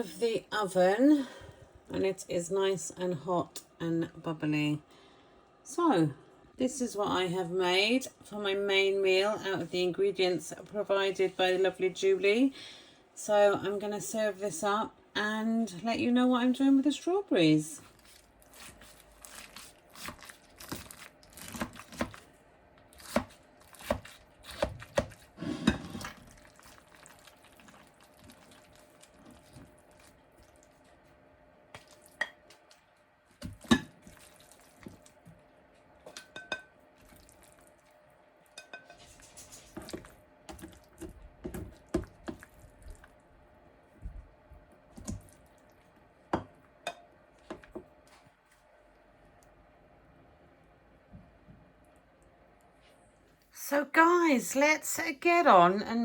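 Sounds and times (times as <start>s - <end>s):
dishes clinking: 36.1s - 36.8s, 38.5s - 39.2s
spoon scraping a baking dish: 38.5s - 40.7s.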